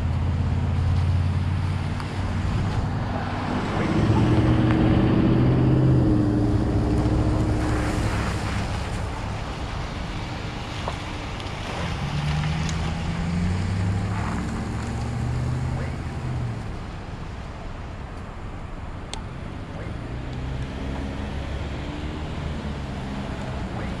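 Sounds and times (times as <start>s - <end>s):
vehicle engine running: 0.0s - 9.8s.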